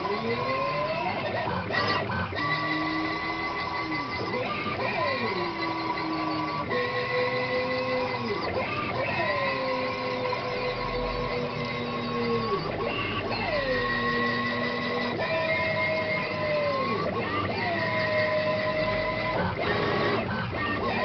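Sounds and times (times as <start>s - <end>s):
stepper motors whining: 0.0s - 21.0s.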